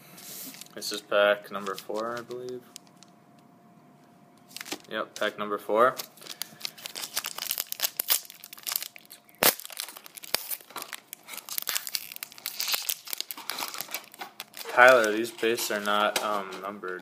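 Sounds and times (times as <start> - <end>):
card pack wrapper crinkling and tearing: 1.6 - 3.0, 4.5 - 5.3, 5.9 - 17.0
sharp wrapper snap: 6.4 - 15.0.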